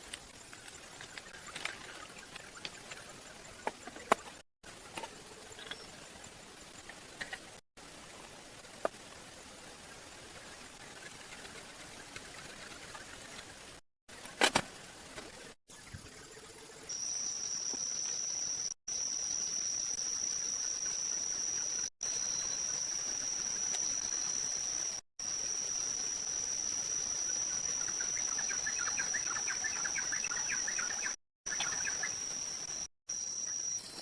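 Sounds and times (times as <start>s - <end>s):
insects trilling: 16.3s - 34.0s.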